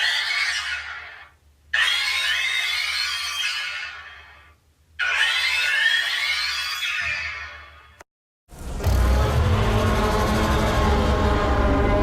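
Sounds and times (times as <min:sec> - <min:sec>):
monster call: 0:08.8 - 0:12.0.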